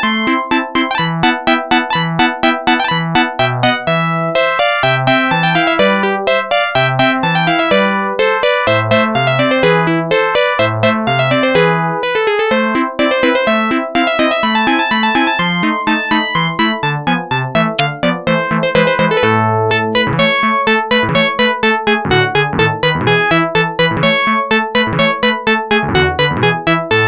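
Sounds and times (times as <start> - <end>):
electronic ringtone melody: 0.0 - 4.8.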